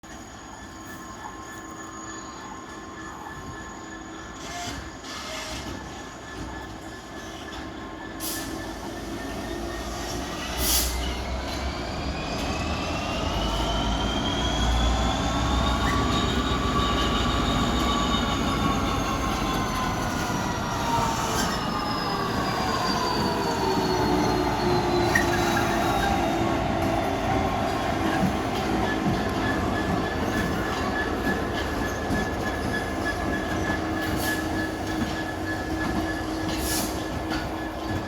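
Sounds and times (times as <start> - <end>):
squealing train wheels: 0.0 - 38.0
freight train rumbling past: 7.8 - 38.0.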